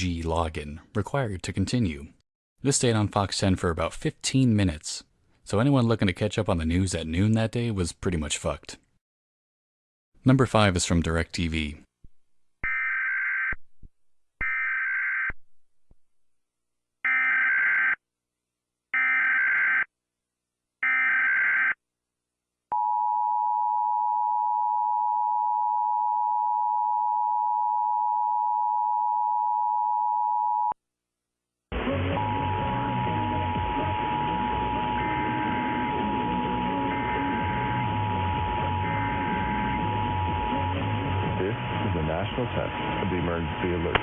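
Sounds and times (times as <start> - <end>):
harsh electronic data bursts: 31.8 - 43.8
two-tone attention signal: 32.1 - 41.4.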